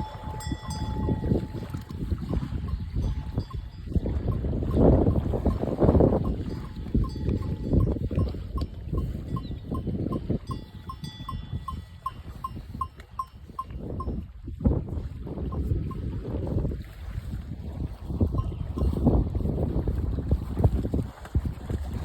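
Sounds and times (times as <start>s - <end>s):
cow bell ringing: 0.0s - 14.3s, 15.4s - 16.2s, 18.0s - 19.6s
wind buffeting microphone: 0.0s - 22.0s.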